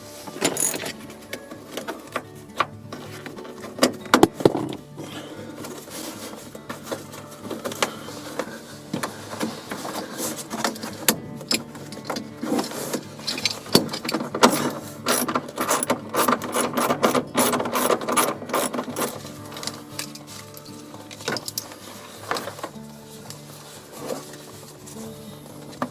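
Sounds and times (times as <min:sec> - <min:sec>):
ratchet wrench clicking: 0:13.3 - 0:20.2.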